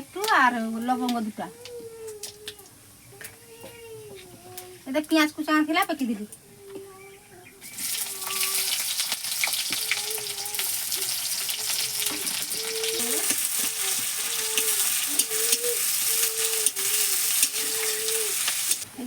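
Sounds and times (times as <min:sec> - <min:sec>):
onion sizzling in hot oil: 0:07.6 - 0:19.0
spatula stirring and scraping: 0:11.3 - 0:18.8.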